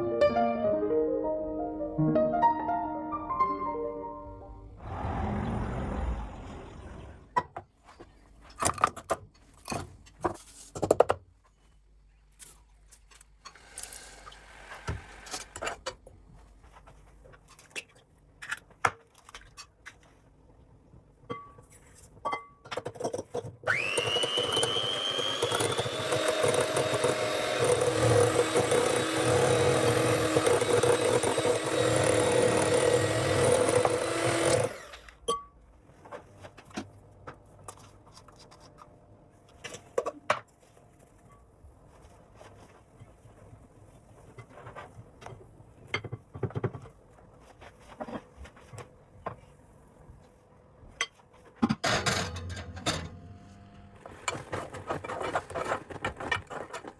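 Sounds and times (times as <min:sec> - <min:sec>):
small electric motor whining: 0:23.7 - 0:35.1.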